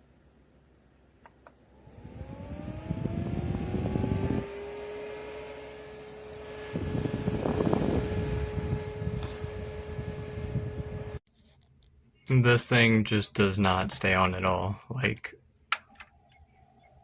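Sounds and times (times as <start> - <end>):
small fan motor whine: 1.4 - 11.2.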